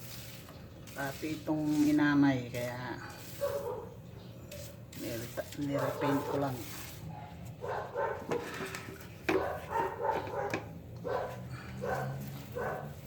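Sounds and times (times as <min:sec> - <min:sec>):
dog barking: 0:03.4 - 0:03.9, 0:05.7 - 0:08.4, 0:09.3 - 0:13.0.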